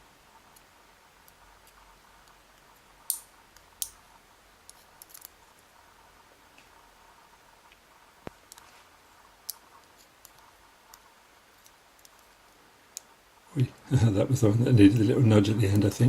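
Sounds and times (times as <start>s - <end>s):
lock pins and tools clicking: 4.7s - 5.4s.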